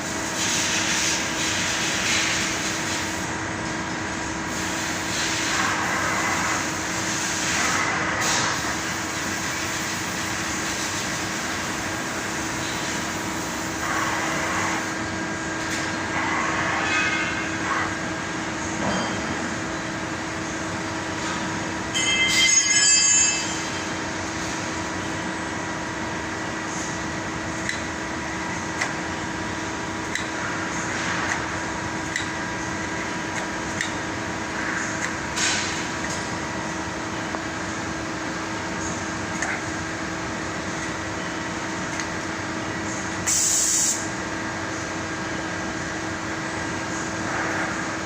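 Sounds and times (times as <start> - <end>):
machine hum: 0.0 - 43.3.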